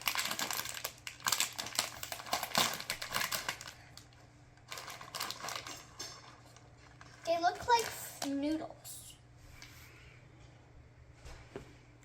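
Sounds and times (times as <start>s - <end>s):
plastic snack bag crinkling: 0.0s - 9.0s.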